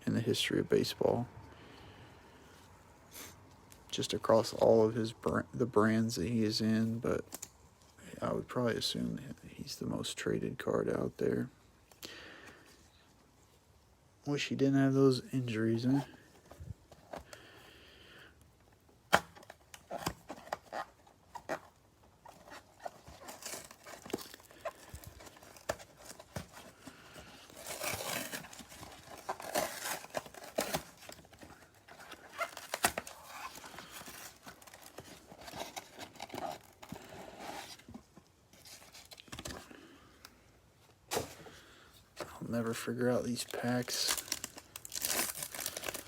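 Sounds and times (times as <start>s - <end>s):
cardboard box tearing: 27.5s - 37.9s, 44.1s - 46.0s.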